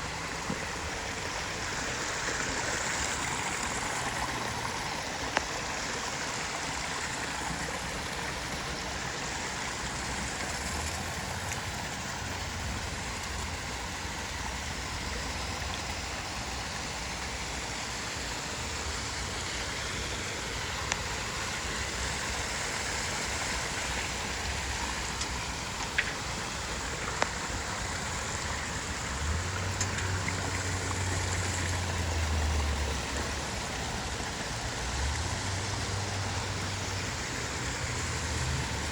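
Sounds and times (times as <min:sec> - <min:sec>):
waterfall rushing and splashing: 0:00.0 - 0:38.9.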